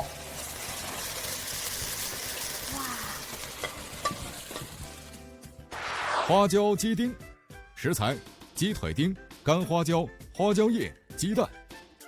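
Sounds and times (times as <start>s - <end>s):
chicken sizzling in hot oil: 0.0s - 6.3s.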